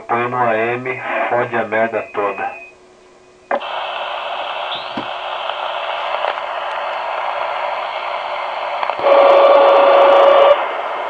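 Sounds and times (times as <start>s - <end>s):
radio interference hiss: 0.0s - 2.7s, 3.5s - 11.0s
steady whistle tone: 4.6s - 5.0s.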